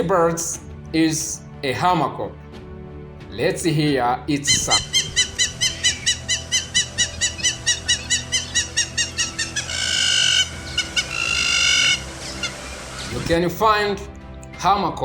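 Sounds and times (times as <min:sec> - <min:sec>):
bird calling short high notes: 0:04.5 - 0:13.2
long drawn-out bird calls: 0:04.5 - 0:13.2.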